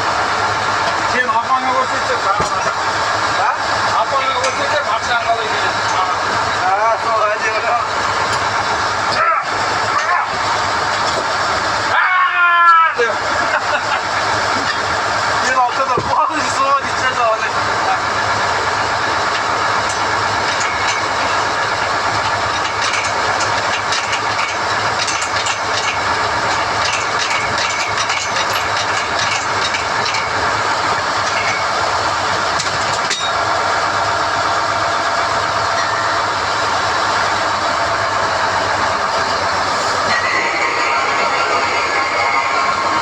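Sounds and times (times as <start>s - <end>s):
drilling rig running: 0.0s - 43.0s
metallic clicks of rods: 22.2s - 30.4s.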